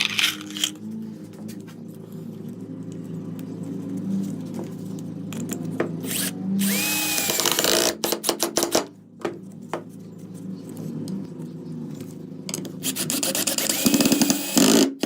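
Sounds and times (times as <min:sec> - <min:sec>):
power tool humming and whining: 0:06.0 - 0:08.0, 0:12.8 - 0:15.0.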